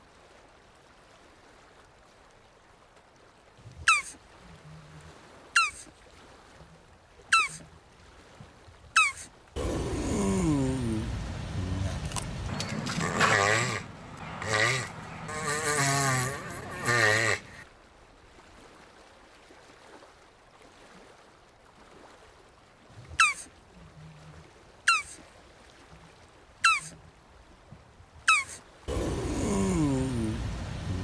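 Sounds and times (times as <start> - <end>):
tortoise high chirps: 7.3 - 7.6, 24.9 - 25.2, 26.6 - 26.9, 28.3 - 31.0
tortoise low groan: 9.6 - 17.6, 28.3 - 31.0.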